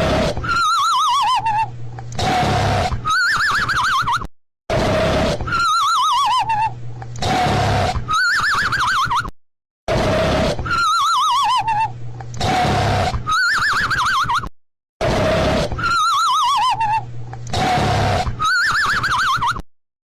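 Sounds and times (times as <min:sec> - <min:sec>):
cartoon snoring: 0:00.0 - 0:00.7, 0:02.2 - 0:03.1, 0:04.7 - 0:05.7, 0:07.2 - 0:08.2, 0:09.9 - 0:10.9, 0:12.4 - 0:13.5, 0:15.0 - 0:16.0, 0:17.5 - 0:18.6.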